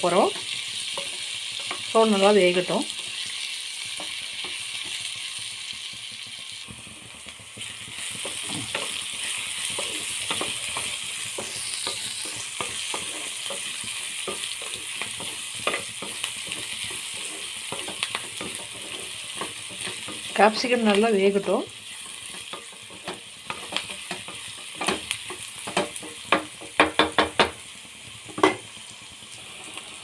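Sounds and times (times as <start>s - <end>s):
vegetables sizzling in oil: 0.0s - 30.0s
spatula scraping a pan: 0.2s - 2.2s, 6.7s - 27.0s.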